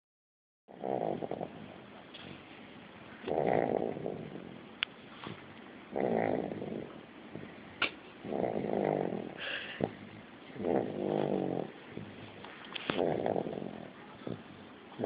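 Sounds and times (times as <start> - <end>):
person snoring: 0.7 - 1.6, 3.3 - 4.5, 5.9 - 7.5, 8.2 - 14.5.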